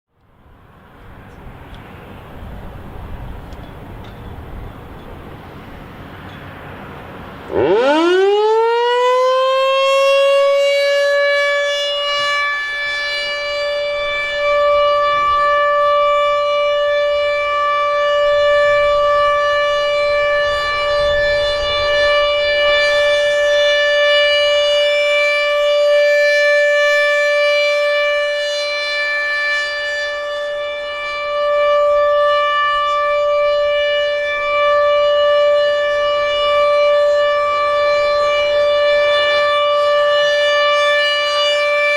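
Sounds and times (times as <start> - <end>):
warning siren steady tone: 0.2 - 41.9.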